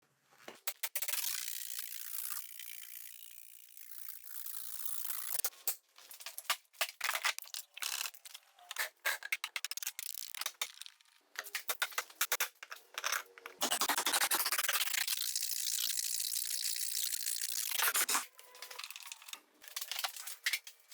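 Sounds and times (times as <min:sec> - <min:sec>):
hand tools clicking and scraping wood: 0:05.2 - 0:15.1, 0:17.6 - 0:20.8.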